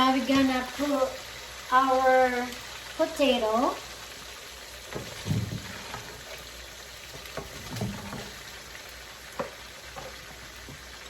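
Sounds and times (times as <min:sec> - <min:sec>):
chicken sizzling in a pan: 0:00.0 - 0:11.0.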